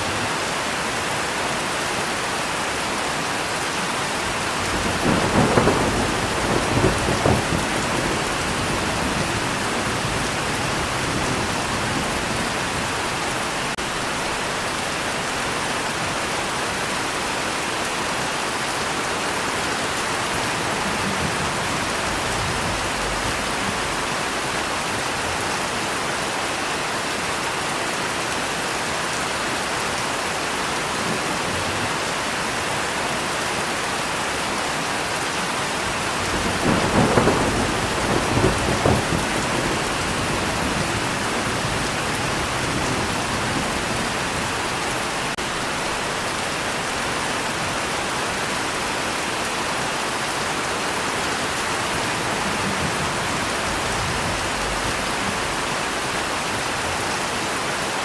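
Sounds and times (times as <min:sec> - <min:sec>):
steady rain falling: 0:00.0 - 0:58.0
thunder rumbling: 0:04.2 - 0:17.2, 0:19.8 - 0:25.0, 0:35.9 - 0:48.9, 0:51.4 - 0:56.2.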